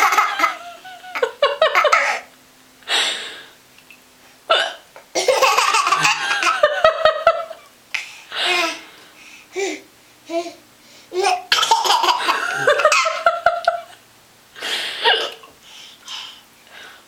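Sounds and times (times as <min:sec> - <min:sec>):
baby laughing: 0:00.0 - 0:02.3, 0:05.2 - 0:07.7, 0:09.6 - 0:13.9.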